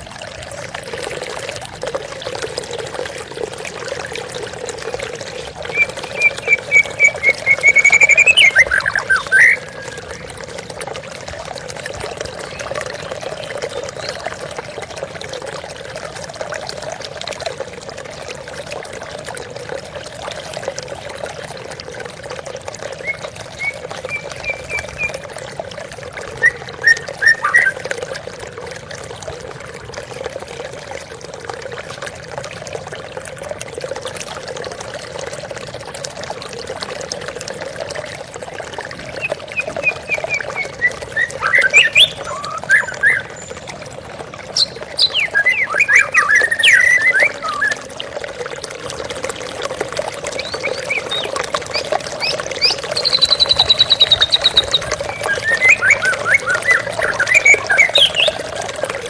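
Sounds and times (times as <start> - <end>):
water flowing: 0.0 - 59.0
bird chirping: 52.6 - 58.4.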